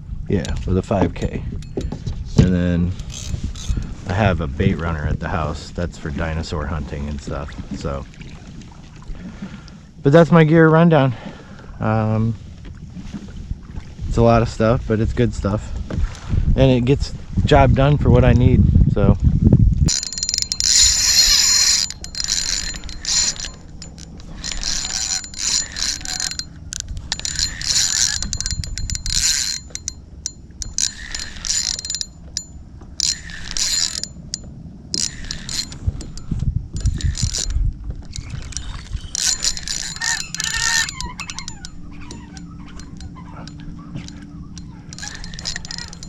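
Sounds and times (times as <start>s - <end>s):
fishing reel drag buzzing: 2.9s - 4.0s, 19.9s - 46.0s.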